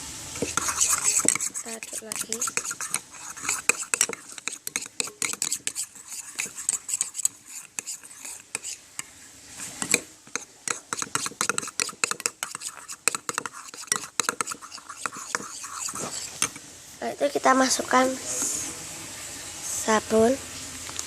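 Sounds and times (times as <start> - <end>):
utensil scraping slime in container: 0.4 - 8.8, 9.6 - 16.6.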